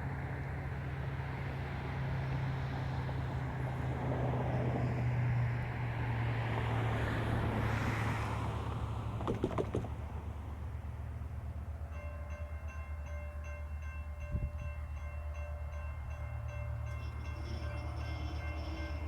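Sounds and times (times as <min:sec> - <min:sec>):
diesel locomotive approaching: 0:00.0 - 0:19.0.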